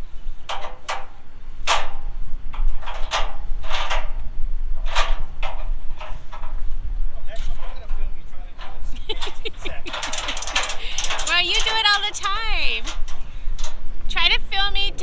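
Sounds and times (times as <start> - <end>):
steady low rumble: 10.7 - 15.0.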